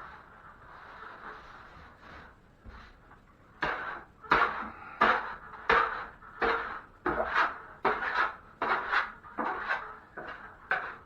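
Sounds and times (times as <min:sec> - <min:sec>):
knife scraping joint compound: 0:03.6 - 0:11.0.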